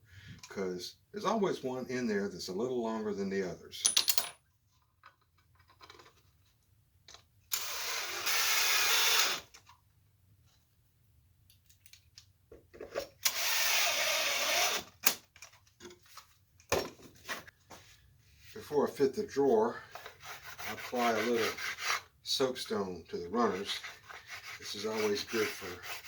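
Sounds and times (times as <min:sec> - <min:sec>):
handling clicks and knocks: 0:03.8 - 0:04.4
power drill running: 0:07.6 - 0:09.4, 0:13.2 - 0:14.9.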